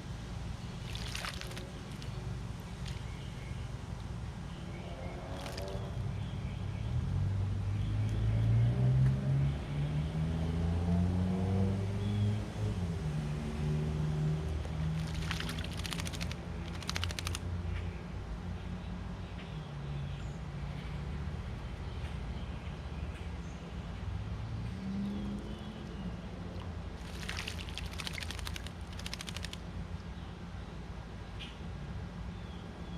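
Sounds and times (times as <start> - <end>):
rapid clicking bursts: 15.0 - 17.4, 27.0 - 29.6.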